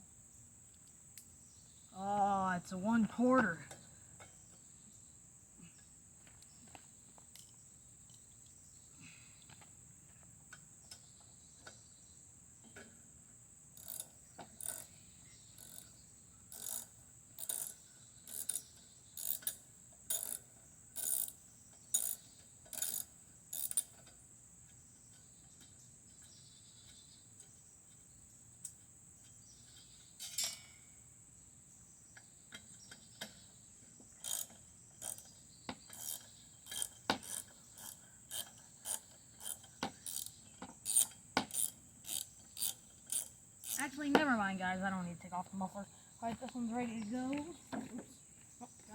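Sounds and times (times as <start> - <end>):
cricket trill: 0.0 - 48.9
ratchet wrench clicking: 13.8 - 14.9, 15.6 - 24.2, 34.2 - 43.9.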